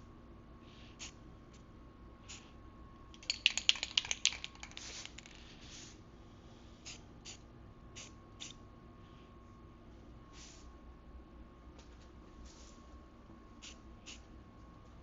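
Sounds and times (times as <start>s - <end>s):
spray can rattling: 3.2s - 5.4s
spray paint hissing: 3.4s - 5.9s.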